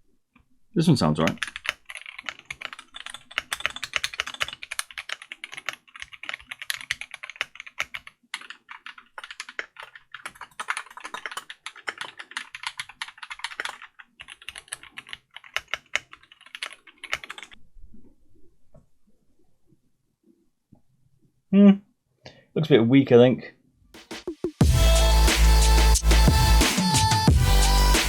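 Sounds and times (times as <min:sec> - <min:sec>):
mechanical keyboard typing: 0:01.2 - 0:17.6.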